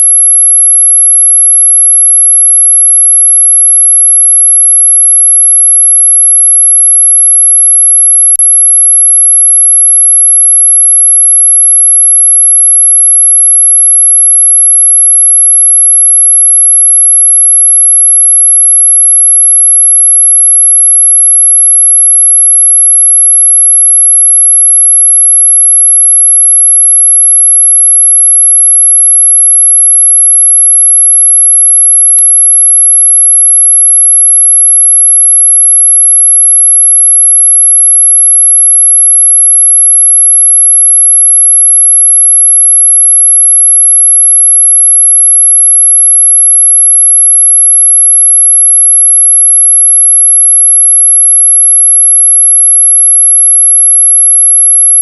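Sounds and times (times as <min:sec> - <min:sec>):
high-pitched pure tone: 0:00.0 - 0:00.2.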